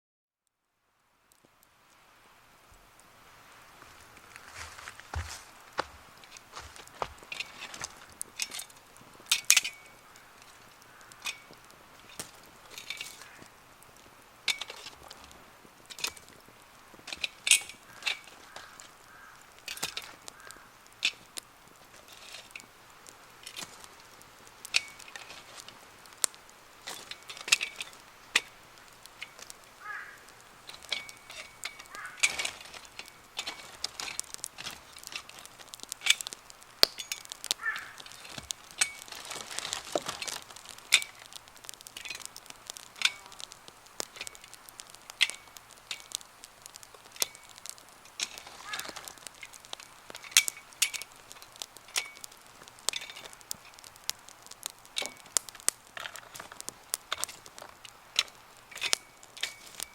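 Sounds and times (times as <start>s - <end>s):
campfire crackling and popping: 0.4s - 59.9s
bird calling: 9.7s - 11.5s, 17.6s - 20.9s, 29.7s - 32.4s, 36.9s - 38.2s, 48.5s - 49.3s.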